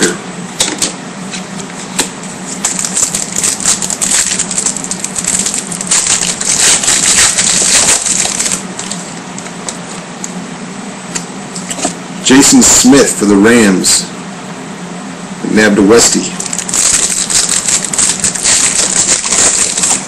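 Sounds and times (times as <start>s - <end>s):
steady low hum: 0.0s - 20.0s
foil wrapper tearing and crinkling: 2.6s - 9.0s, 16.4s - 20.0s.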